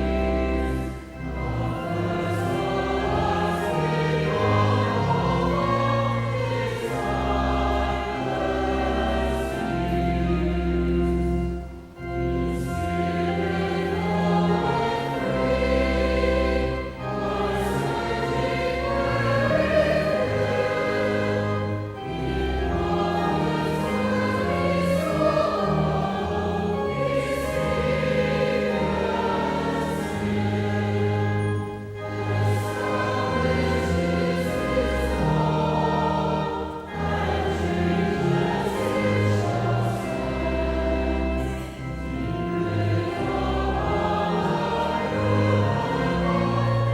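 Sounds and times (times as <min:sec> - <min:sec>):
choir singing a hymn: 0:00.0 - 0:46.9.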